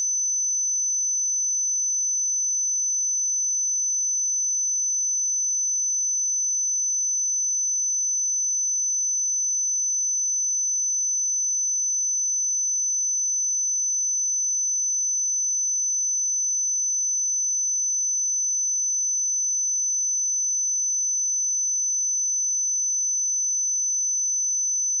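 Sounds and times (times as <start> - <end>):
high-pitched sine-wave test tone: 0.0 - 25.0.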